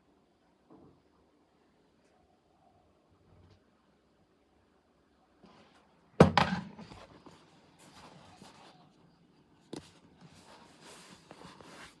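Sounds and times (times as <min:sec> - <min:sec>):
soft rustling and scraping: 0:06.8 - 0:12.0.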